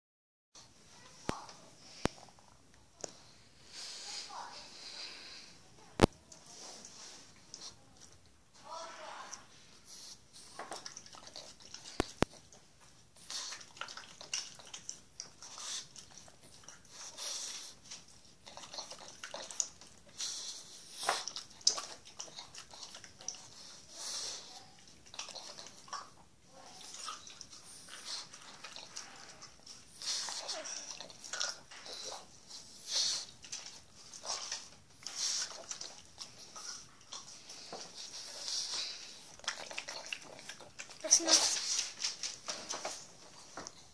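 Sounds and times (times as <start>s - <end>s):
dog chewing with smacking: 9.9s - 43.9s.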